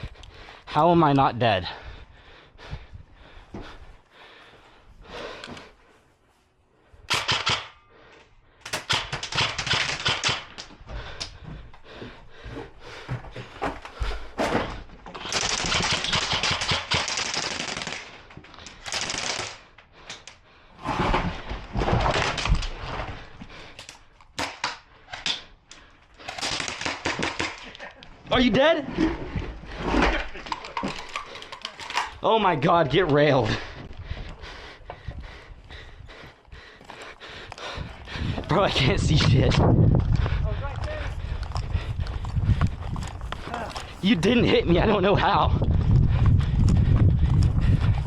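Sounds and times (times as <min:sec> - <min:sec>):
airsoft guns firing bursts: 0:07.1 - 0:07.7, 0:08.7 - 0:10.6, 0:15.2 - 0:18.1, 0:18.8 - 0:19.6, 0:26.4 - 0:27.6.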